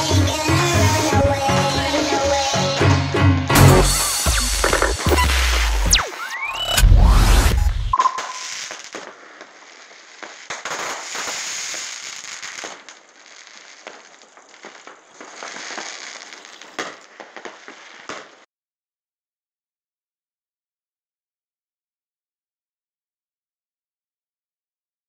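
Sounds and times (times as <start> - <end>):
electronic music with heavy bass: 2.4 - 8.4
fireworks crackling and popping: 3.5 - 18.5.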